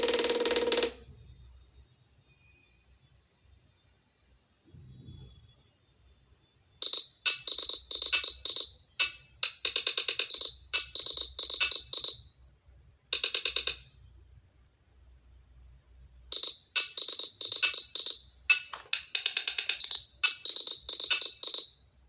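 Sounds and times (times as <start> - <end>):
glitchy electronic ringtone beeps: 6.8 - 12.5, 16.4 - 22.0.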